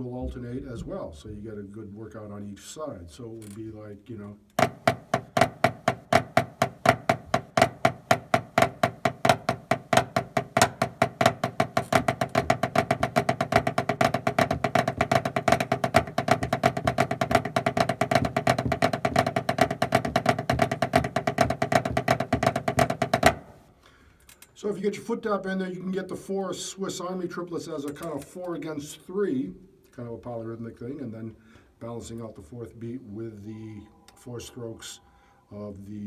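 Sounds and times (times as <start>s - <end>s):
drumsticks on practice pad: 4.6s - 23.7s.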